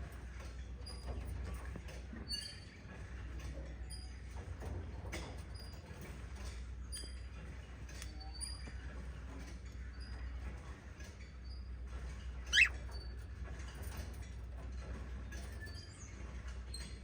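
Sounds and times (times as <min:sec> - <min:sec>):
parrots chirping softly: 0:12.5 - 0:12.9.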